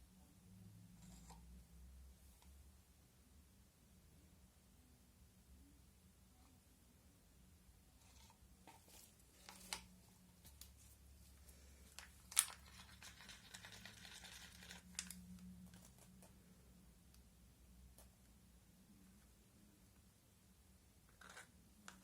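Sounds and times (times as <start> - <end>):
soft crinkling rustle: 8.0 - 16.5.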